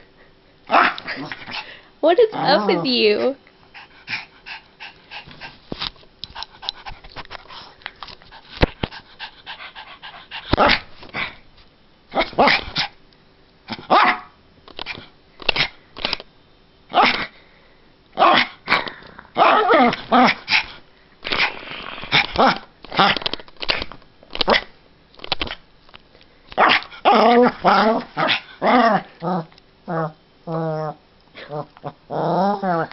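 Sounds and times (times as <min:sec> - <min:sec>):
puppy barking: 0:13.9 - 0:14.4, 0:18.2 - 0:18.5, 0:19.4 - 0:19.9, 0:26.6 - 0:28.4.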